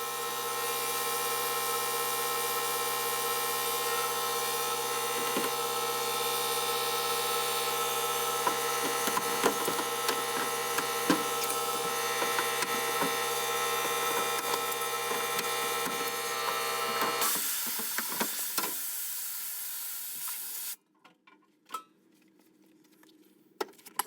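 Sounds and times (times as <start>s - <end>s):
steady motor hum: 0.0s - 17.3s.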